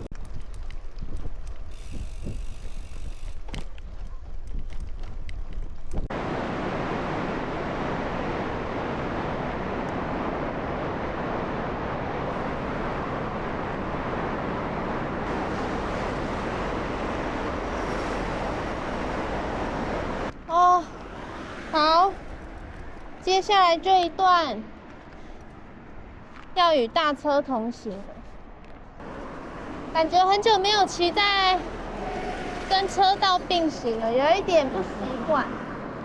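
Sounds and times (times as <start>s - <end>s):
wind buffeting microphone: 0.0s - 27.8s.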